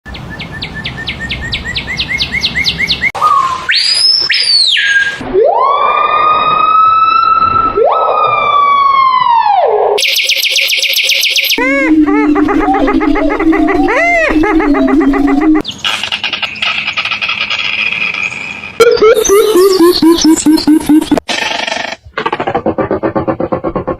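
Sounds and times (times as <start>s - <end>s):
siren-like bird wails: 3.2s - 15.6s, 18.8s - 21.2s
rising bird chirps: 10.0s - 11.6s, 13.7s - 21.2s
rapid buzzing trill: 10.0s - 21.2s.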